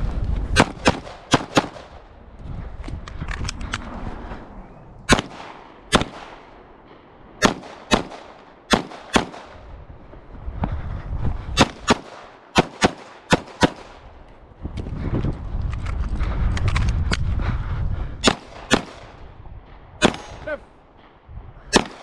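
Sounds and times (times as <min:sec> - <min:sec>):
pistol shots echoing: 0:00.6 - 0:02.0, 0:05.1 - 0:06.6, 0:07.4 - 0:09.6, 0:11.6 - 0:14.0, 0:20.0 - 0:20.4, 0:21.7 - 0:22.0.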